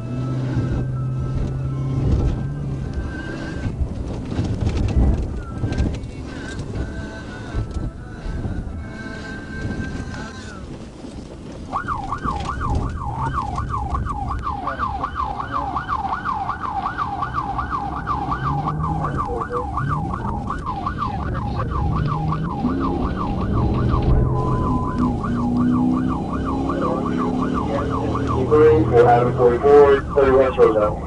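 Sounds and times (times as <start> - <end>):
car engine and road noise: 0.0 - 31.0
police siren yelping: 11.7 - 31.0.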